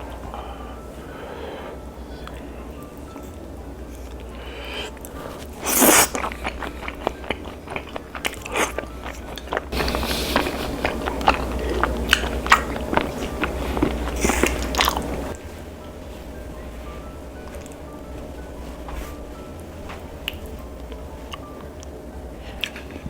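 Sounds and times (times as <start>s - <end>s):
crackling chewing crunches: 0.0s - 23.0s
crunchy bite of fried chicken: 4.6s - 15.4s.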